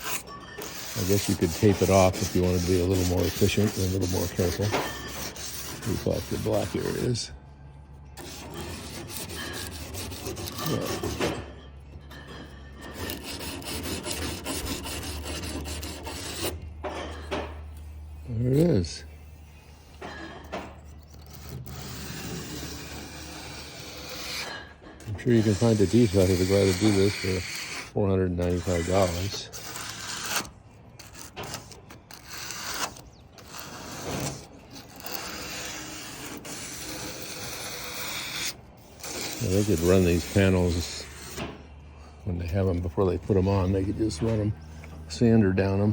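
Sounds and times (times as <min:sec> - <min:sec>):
emery cloth rasping on steel: 0:00.0 - 0:07.3, 0:08.2 - 0:11.4, 0:12.9 - 0:16.6, 0:20.9 - 0:41.6.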